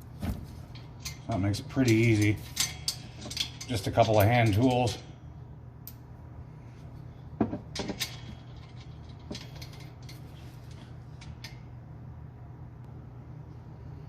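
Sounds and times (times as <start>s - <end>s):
steady low hum: 0.0s - 14.0s
metal tools clinking: 0.6s - 5.2s, 7.8s - 11.6s.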